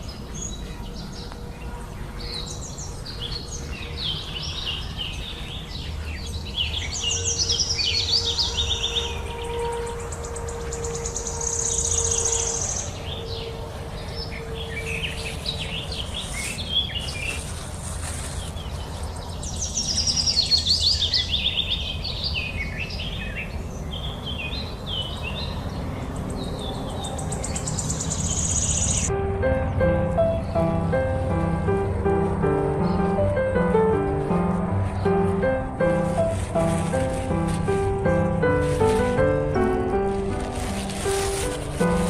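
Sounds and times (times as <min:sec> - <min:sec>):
birds singing: 0:00.0 - 0:42.0
steady low rumble: 0:29.1 - 0:42.0.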